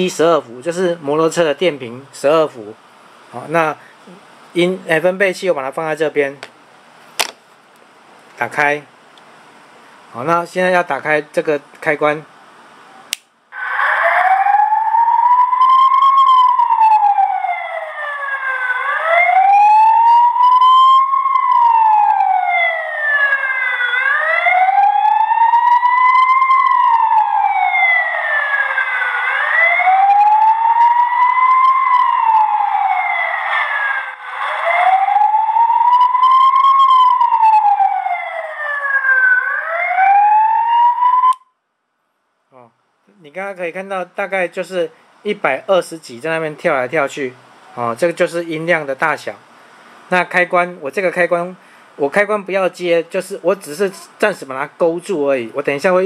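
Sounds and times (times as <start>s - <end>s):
police siren wailing from horn speaker: 13.6s - 41.4s.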